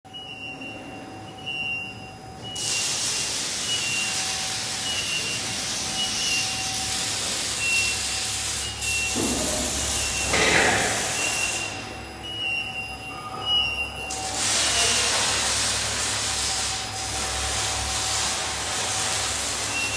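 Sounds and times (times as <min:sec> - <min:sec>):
welding arc hissing and crackling: 0:02.6 - 0:11.9, 0:14.1 - 0:19.9.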